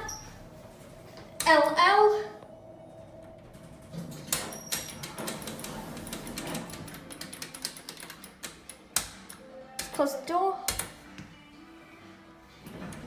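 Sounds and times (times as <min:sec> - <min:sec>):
elevator cab clicking: 0:03.1 - 0:09.9.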